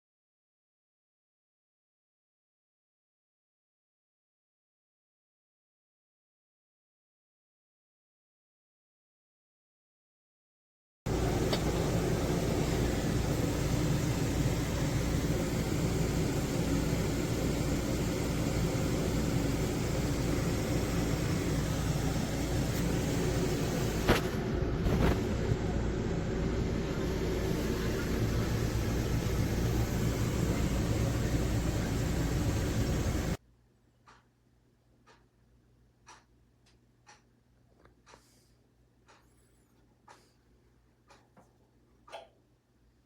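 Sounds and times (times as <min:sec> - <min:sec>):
water boiling hard in a pot: 0:11.1 - 0:25.4, 0:26.4 - 0:33.4.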